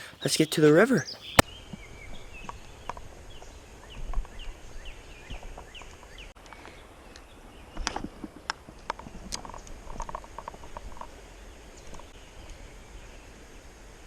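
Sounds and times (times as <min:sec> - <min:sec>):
small bird chirping: 0:00.0 - 0:07.9.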